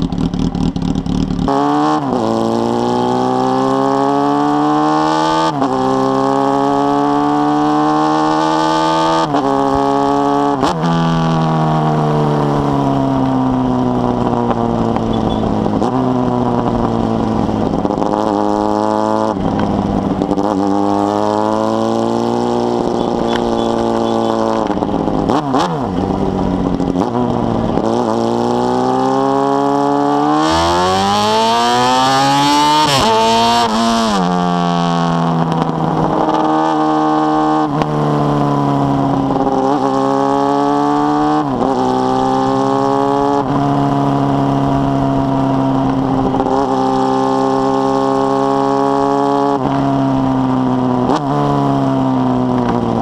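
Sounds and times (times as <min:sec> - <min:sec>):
motorcycle engine accelerating: 0:00.0 - 0:53.0.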